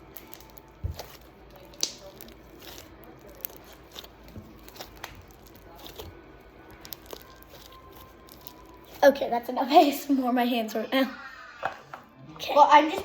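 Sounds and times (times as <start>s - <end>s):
slime crackling and popping: 0.0s - 9.4s
sharp snap of slime: 1.7s - 2.8s.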